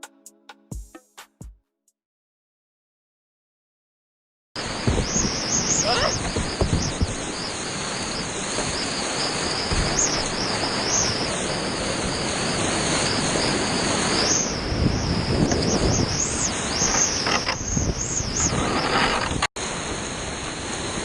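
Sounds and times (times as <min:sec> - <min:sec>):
whitewater rapids rushing: 0:04.6 - 0:14.7.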